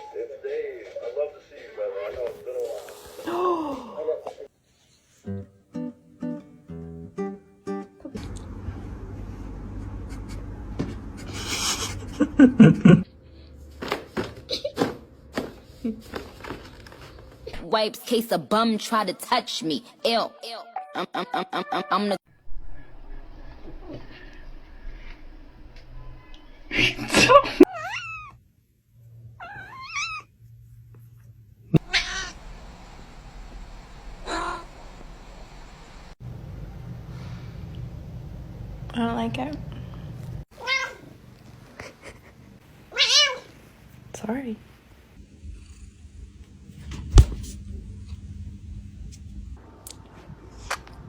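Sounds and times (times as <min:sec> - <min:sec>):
cat crying: 0:27.7 - 0:28.4, 0:29.4 - 0:30.3, 0:31.8 - 0:32.4, 0:40.5 - 0:41.1, 0:42.9 - 0:43.5
cat hissing: 0:31.8 - 0:32.4
steady low rumble: 0:32.4 - 0:40.4.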